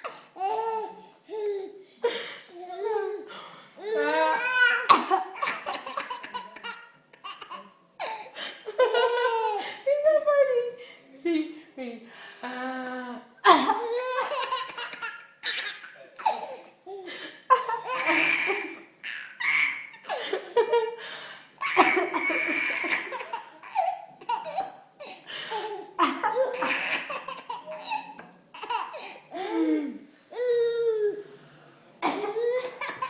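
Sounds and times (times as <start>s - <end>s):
woman coughing: 4.8s - 6.8s, 13.4s - 13.9s, 32.0s - 33.0s
baby laughing: 13.5s - 20.3s.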